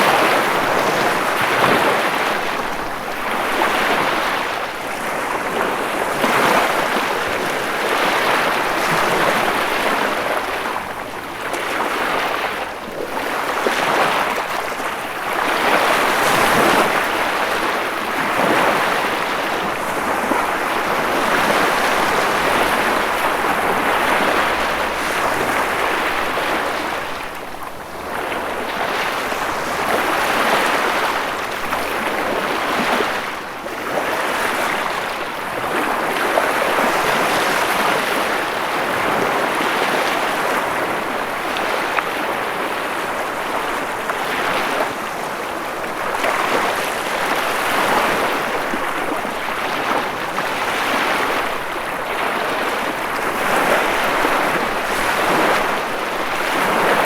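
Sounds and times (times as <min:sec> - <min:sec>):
ocean waves breaking on shore: 0:00.0 - 0:57.0.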